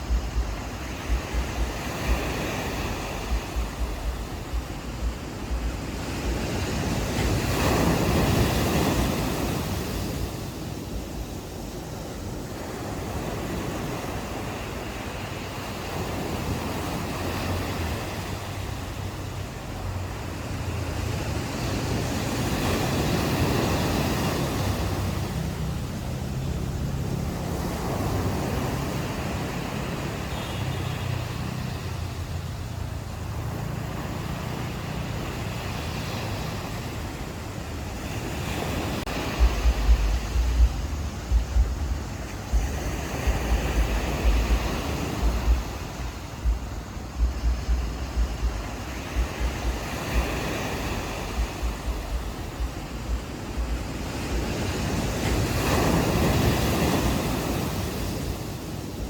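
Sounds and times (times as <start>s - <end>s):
ocean waves washing onto beach: 0.0s - 59.0s
wind buffeting microphone: 0.0s - 59.0s
low steady hum: 39.4s - 49.8s.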